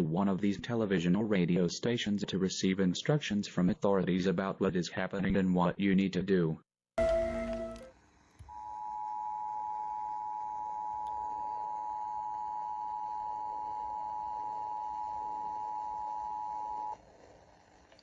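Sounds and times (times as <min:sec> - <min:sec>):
two-tone alarm: 0:08.5 - 0:17.0.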